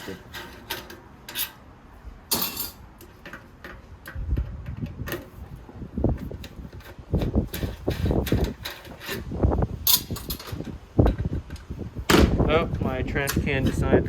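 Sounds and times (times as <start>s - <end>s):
metal parts clicking: 0.0s - 1.6s, 2.3s - 3.8s, 9.8s - 11.6s
wind rumbling on microphone: 3.8s - 14.0s.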